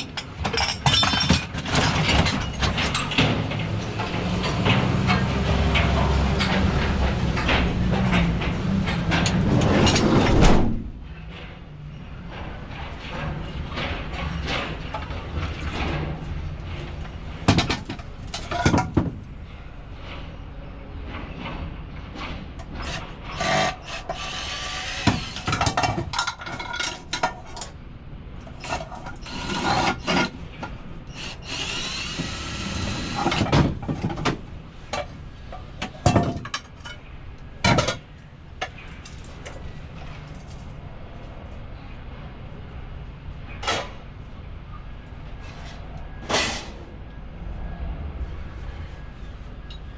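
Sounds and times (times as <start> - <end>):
scrap metal knocks and clanks: 0.0 - 20.4, 21.0 - 27.8, 28.4 - 40.8.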